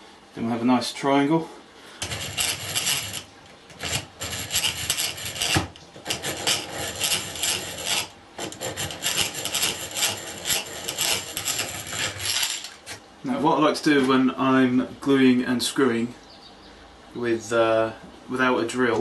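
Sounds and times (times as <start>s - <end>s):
handsaw cutting wood: 2.0s - 12.3s.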